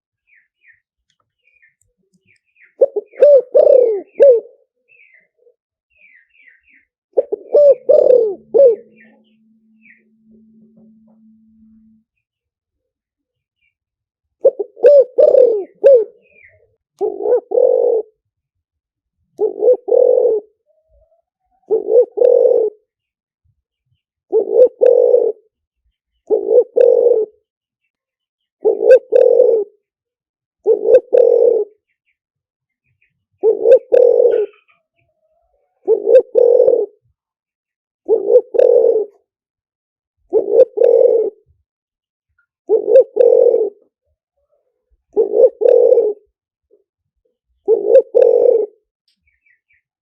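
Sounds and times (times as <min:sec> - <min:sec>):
dove cooing: 0:02.8 - 0:05.3, 0:07.2 - 0:11.3, 0:14.4 - 0:18.2, 0:19.4 - 0:22.9, 0:24.3 - 0:25.5, 0:26.3 - 0:27.4, 0:28.6 - 0:29.8, 0:30.6 - 0:31.9, 0:33.4 - 0:37.1, 0:38.1 - 0:39.3, 0:40.2 - 0:41.6, 0:42.7 - 0:46.4, 0:47.6 - 0:48.9.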